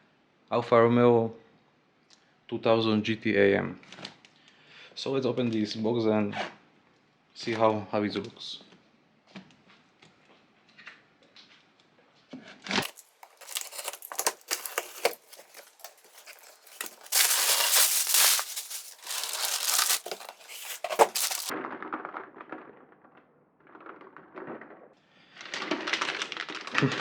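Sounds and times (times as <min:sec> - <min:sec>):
packaging rustling and tearing: 0:12.8 - 0:21.5.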